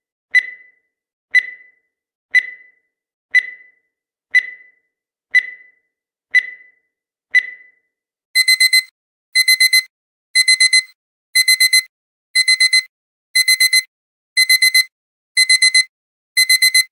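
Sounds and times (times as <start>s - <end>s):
countdown timer beeps: 0.3s - 7.8s, 8.4s - 16.9s
digital alarm clock beeping: 0.3s - 16.9s.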